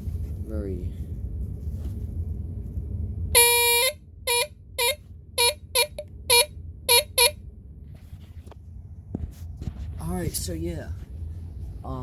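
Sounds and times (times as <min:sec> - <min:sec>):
smoke alarm blasts: 0:03.4 - 0:07.4.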